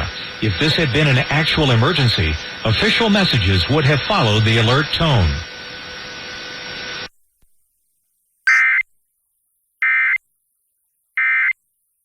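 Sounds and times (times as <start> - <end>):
digital data tone bursts: 8.5 - 8.8.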